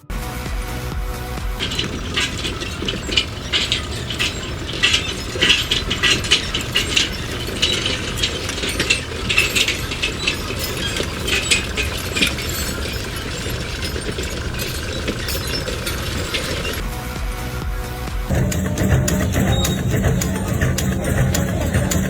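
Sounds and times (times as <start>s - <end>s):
mechanical clicking and rattling: 1.6s - 16.8s.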